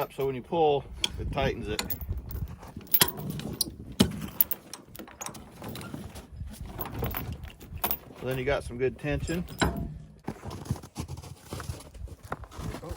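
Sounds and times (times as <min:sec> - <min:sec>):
chain links clanking: 0:00.0 - 0:00.4, 0:01.0 - 0:10.2.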